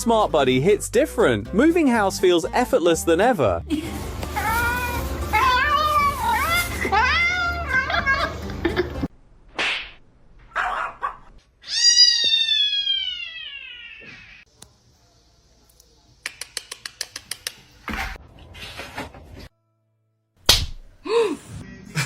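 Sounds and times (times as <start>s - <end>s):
cat meowing: 11.6s - 14.4s.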